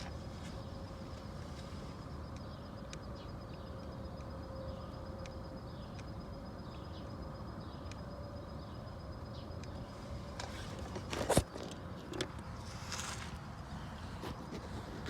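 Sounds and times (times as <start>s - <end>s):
steady low hum: 0.0s - 15.0s
starter circuit clicks: 7.8s - 8.1s.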